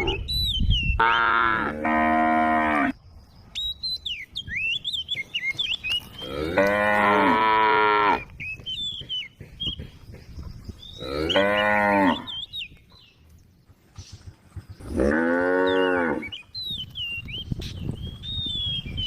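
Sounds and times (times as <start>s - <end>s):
cow mooing: 1.0s - 3.0s, 6.2s - 8.2s, 11.0s - 12.3s, 14.9s - 16.3s.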